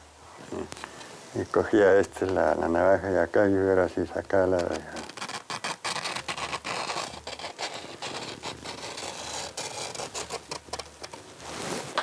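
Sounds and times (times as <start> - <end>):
knife scraping cane: 4.2 - 12.0.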